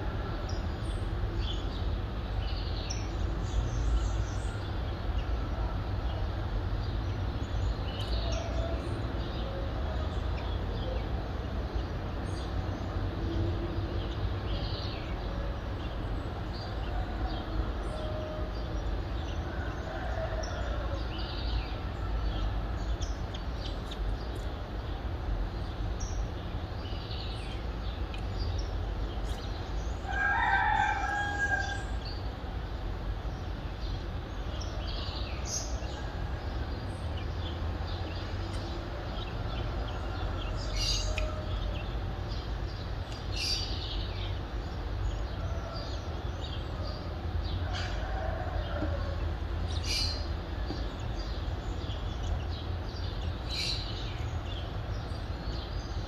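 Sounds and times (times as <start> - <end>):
low rumble of city traffic: 0.0 - 56.0
small birds chirping: 17.9 - 31.0, 33.2 - 48.1, 48.7 - 56.0
rooster crowing: 19.5 - 21.2, 30.0 - 32.0, 47.6 - 49.3.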